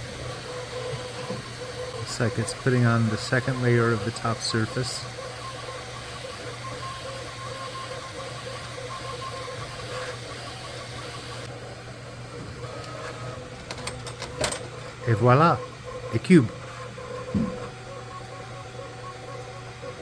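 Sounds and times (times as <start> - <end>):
stepper motors humming: 0.0 - 20.0.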